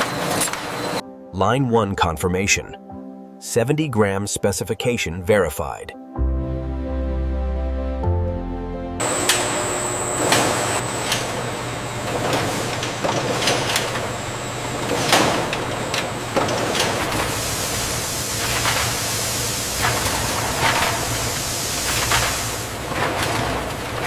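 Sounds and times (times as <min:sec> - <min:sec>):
machinery humming and hissing: 0:00.0 - 0:01.0, 0:09.0 - 0:24.0
thin high whine: 0:09.0 - 0:22.8.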